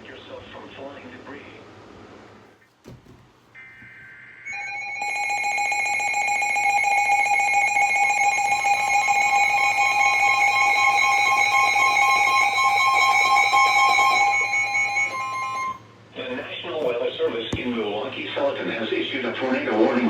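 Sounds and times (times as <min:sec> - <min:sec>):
steady multi-pitch alert tone: 0:07.9 - 0:15.8.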